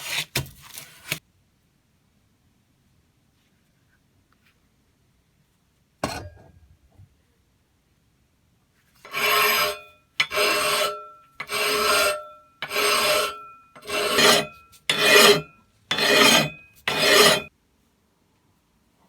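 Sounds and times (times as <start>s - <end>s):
hand file rasping across metal: 9.0s - 17.5s.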